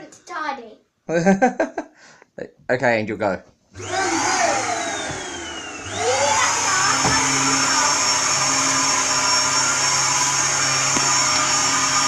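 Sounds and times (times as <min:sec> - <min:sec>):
vacuum cleaner whining: 0:03.8 - 0:12.0.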